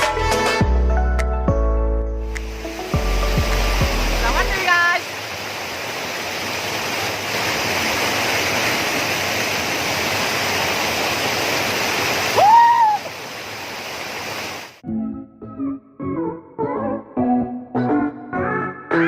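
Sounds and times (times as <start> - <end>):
waterfall rushing: 2.2 - 14.8.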